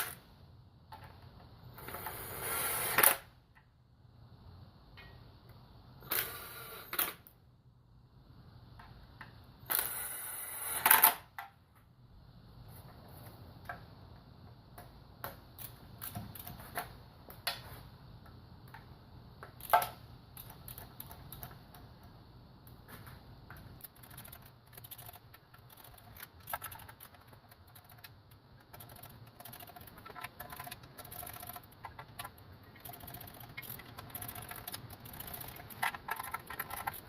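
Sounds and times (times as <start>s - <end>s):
rapid clicking of hand tools: 23.8s - 37.0s.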